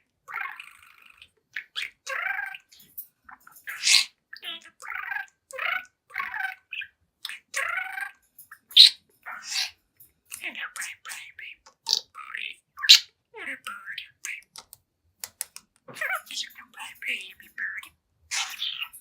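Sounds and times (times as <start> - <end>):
budgerigar chattering: 3.4 - 9.7, 10.4 - 14.6, 15.9 - 19.0
sharp high bird chirps: 8.6 - 9.7.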